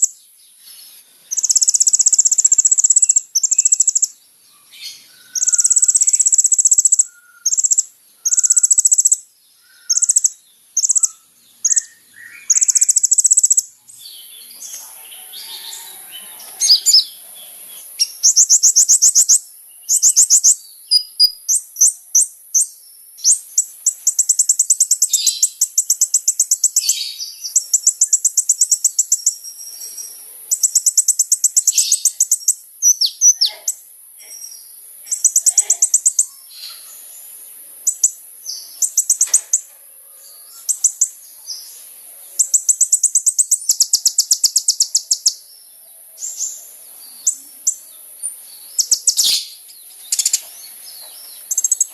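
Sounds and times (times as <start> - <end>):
bird chattering notes: 1.3 - 4.2, 5.3 - 9.2, 9.8 - 13.7, 16.5 - 17.3, 17.9 - 37.0, 37.8 - 39.7, 40.6 - 41.2, 42.3 - 45.5, 46.3 - 47.9, 48.7 - 50.5, 51.4 - 51.9
bird high-pitched trills: 1.3 - 33.8, 34.4 - 37.1, 37.8 - 41.6, 42.3 - 45.5, 46.2 - 51.9.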